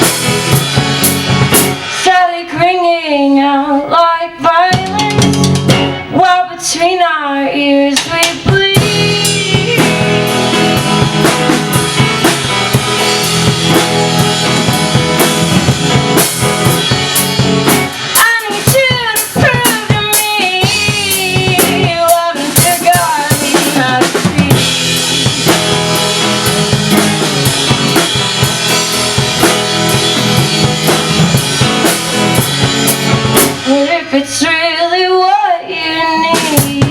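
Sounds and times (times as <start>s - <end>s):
drum kit playing: 0.0s - 2.3s, 4.6s - 6.2s, 7.9s - 34.5s, 36.3s - 36.9s
guitar with sliding bending notes: 4.7s - 6.1s, 8.1s - 34.6s.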